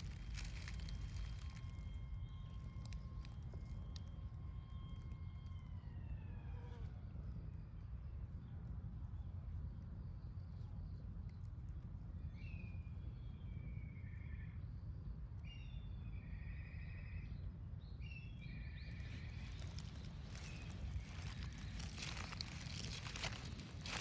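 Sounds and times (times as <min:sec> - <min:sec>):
steady low rumble: 0:00.0 - 0:04.4, 0:18.5 - 0:24.0.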